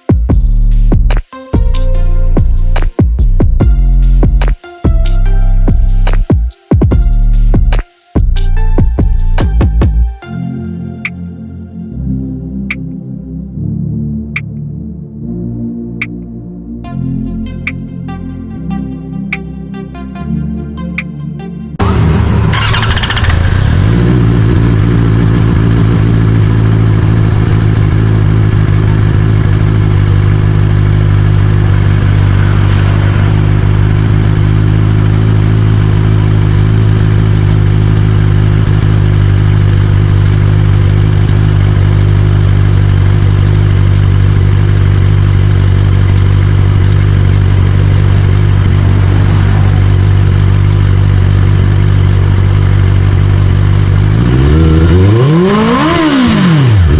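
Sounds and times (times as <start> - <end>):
motorcycle engine idling: 21.8 - 56.1.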